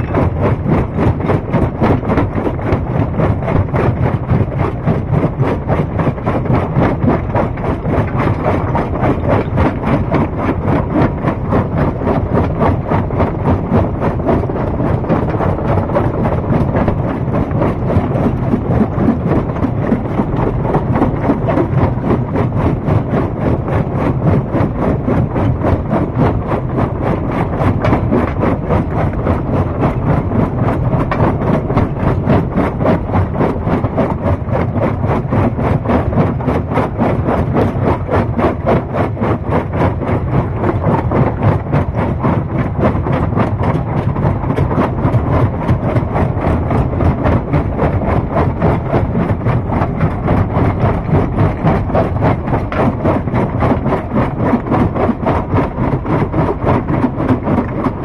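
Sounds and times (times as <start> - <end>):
stone crusher running: 0.0 - 3.7.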